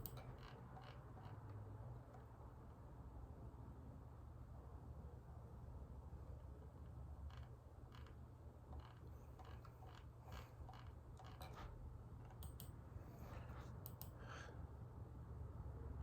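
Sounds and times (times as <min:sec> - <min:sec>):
faint clicks: 0:13.8 - 0:14.2.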